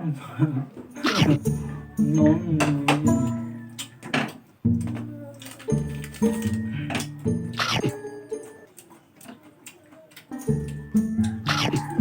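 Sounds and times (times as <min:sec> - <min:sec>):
background music: 0:00.9 - 0:08.7, 0:10.3 - 0:12.0.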